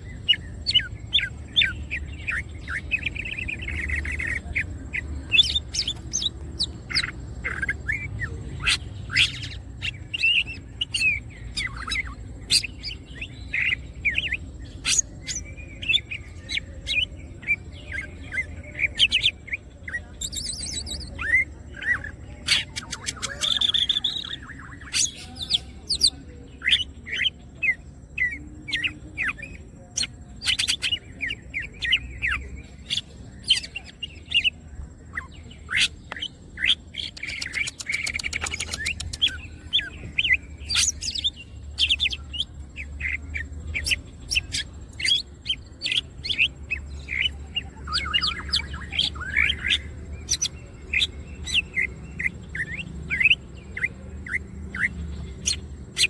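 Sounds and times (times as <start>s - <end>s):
bird singing: 0.0s - 56.0s.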